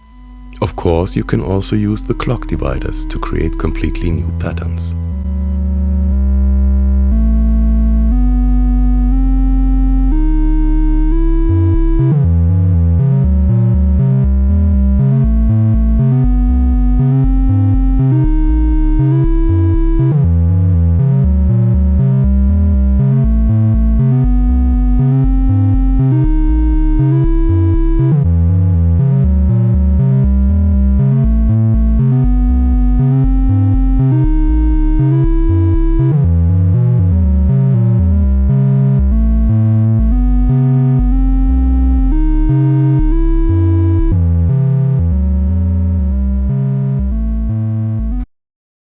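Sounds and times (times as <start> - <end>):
pulsing synth bass: 0.0 - 48.2
synthesizer melodic line: 0.5 - 5.6, 33.1 - 36.2, 40.1 - 44.2.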